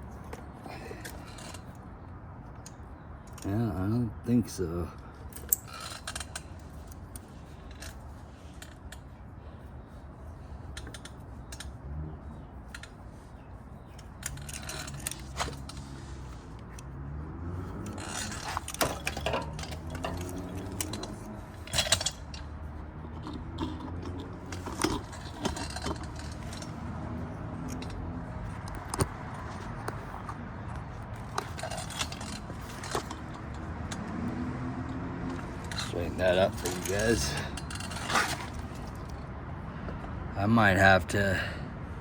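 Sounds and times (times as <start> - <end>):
metallic clicks and rattles: 10.7 - 11.8, 13.9 - 17.0, 17.6 - 26.9, 27.6 - 39.3.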